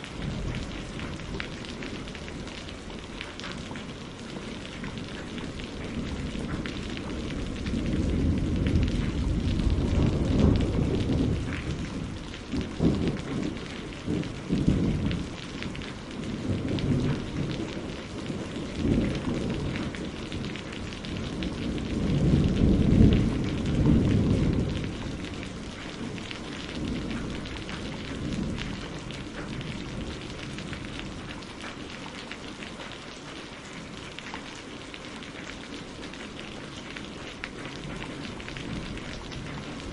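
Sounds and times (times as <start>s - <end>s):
steady rain: 0.0s - 39.9s
rolling thunder: 3.6s - 31.4s, 37.5s - 39.9s
sharp thunder cracks: 7.6s - 15.3s.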